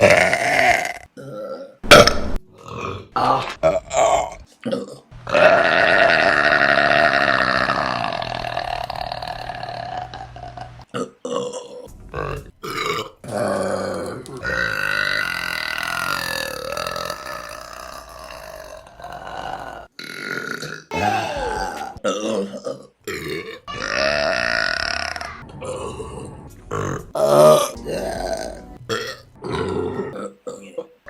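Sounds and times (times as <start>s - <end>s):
woman burping: 0.0s - 3.8s, 4.7s - 11.8s, 12.7s - 26.2s.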